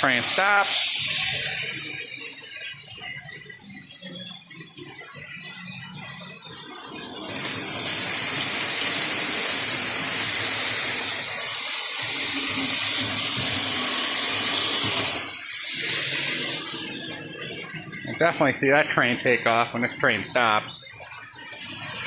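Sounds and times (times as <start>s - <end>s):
model train steady hiss: 0.0s - 2.7s, 7.0s - 16.8s.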